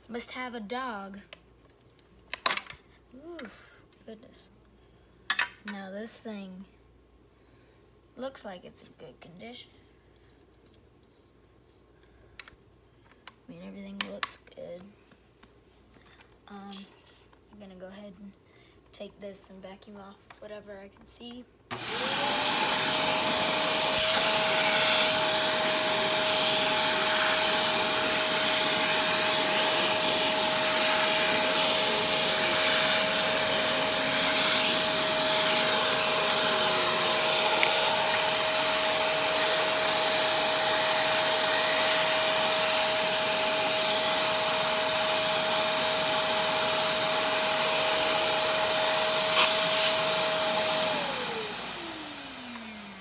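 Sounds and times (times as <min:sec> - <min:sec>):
vacuum cleaner motor whine: 0:21.7 - 0:53.0.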